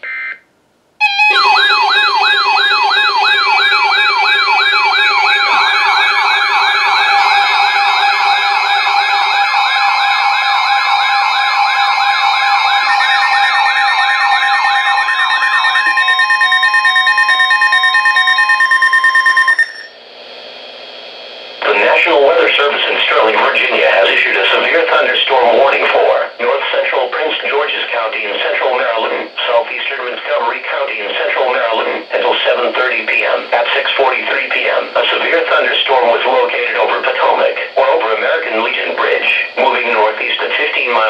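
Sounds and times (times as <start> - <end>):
electronic sirens warbling: 1.0 - 20.0, 21.6 - 29.7
pulsing alarm tones: 1.0 - 20.0, 21.6 - 26.0
steady alert tones: 1.0 - 20.0.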